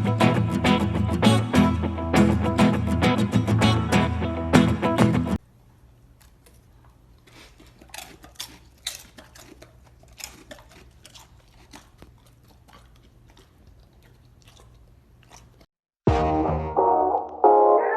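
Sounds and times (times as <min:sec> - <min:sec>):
crunching: 0:06.2 - 0:15.7.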